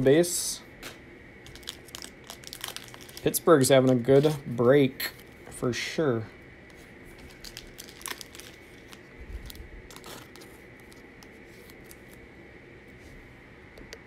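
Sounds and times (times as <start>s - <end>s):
trading cards and wrapper handled: 1.4s - 5.4s, 6.7s - 12.2s.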